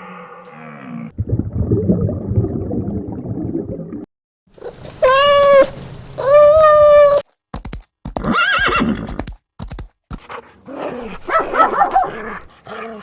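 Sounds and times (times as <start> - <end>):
long steady animal cries: 0.0 - 1.1, 5.0 - 7.2
hoof clip-clops: 7.6 - 10.3
horse whinnying: 8.2 - 9.2.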